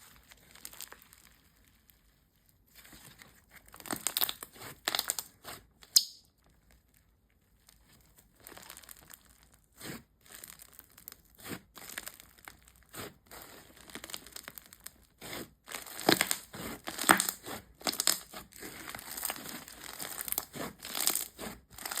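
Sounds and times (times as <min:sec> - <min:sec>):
slime being squished by hand: 0:00.0 - 0:06.0, 0:06.6 - 0:22.0.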